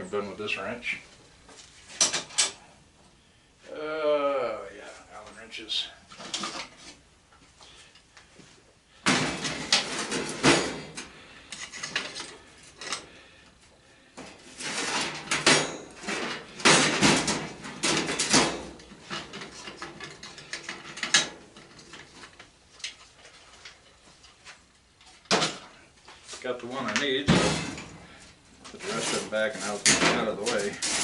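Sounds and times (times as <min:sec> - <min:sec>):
metal hand tools clattering: 0:28.7 - 0:31.0.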